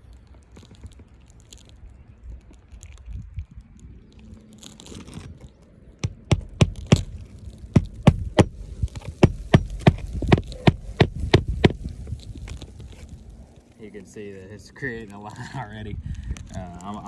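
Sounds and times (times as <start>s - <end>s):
hammer striking nails: 6.0s - 7.1s, 7.7s - 11.8s.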